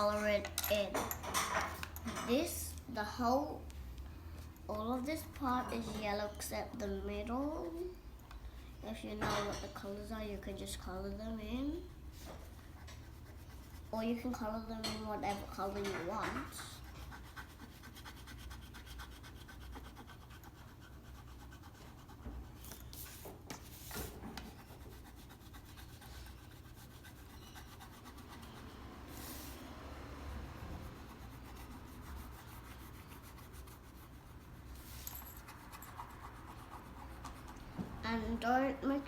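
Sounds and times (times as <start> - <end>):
pen scratching on paper: 12.4 - 13.9, 16.5 - 22.3, 23.9 - 29.6, 30.6 - 37.7.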